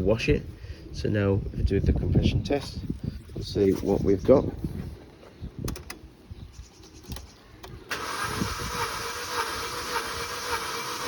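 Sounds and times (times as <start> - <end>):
engine cranking on starter motor: 7.7 - 11.0.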